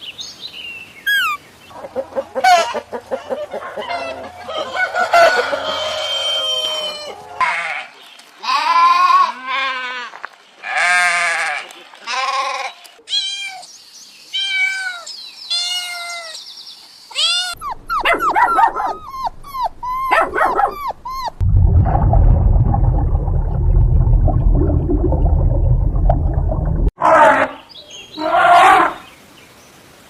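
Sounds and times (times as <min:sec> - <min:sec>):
high yelps and whimpers: 0:01.1 - 0:04.3, 0:17.2 - 0:21.4
animal bleating calls: 0:07.4 - 0:13.3
loud low rumbling: 0:20.9 - 0:26.9.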